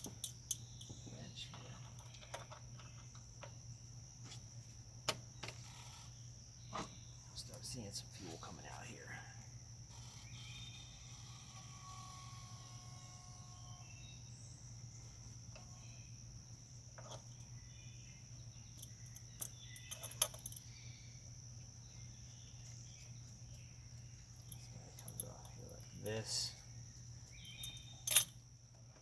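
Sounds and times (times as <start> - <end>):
faint high-pitched whine: 0.0 - 29.0
wrench metallic clicks: 27.6 - 28.3.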